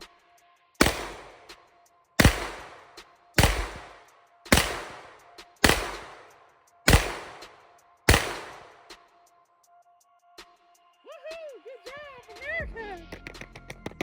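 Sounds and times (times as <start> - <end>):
gunshots with echo: 0.8 - 1.6, 2.2 - 9.0.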